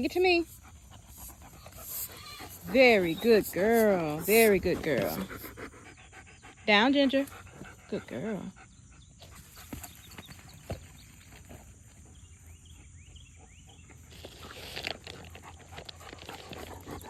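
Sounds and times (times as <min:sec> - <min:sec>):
dog panting: 0:00.0 - 0:10.4, 0:11.9 - 0:17.0
dog moving about: 0:14.1 - 0:17.0.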